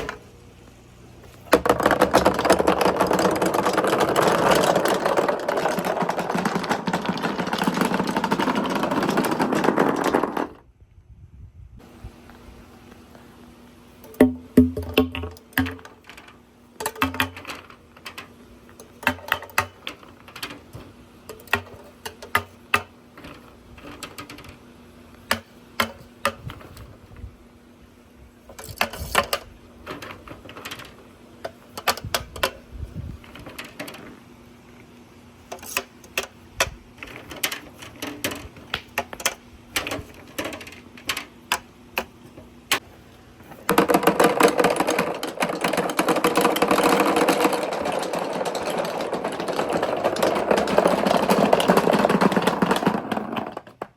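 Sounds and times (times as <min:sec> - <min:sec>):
fast dense marble rattling: 0:01.5 - 0:10.6, 0:14.2 - 0:18.3, 0:28.7 - 0:31.0, 0:43.6 - 0:53.9
marbles clacking down a track: 0:01.5 - 0:10.6, 0:43.7 - 0:53.8.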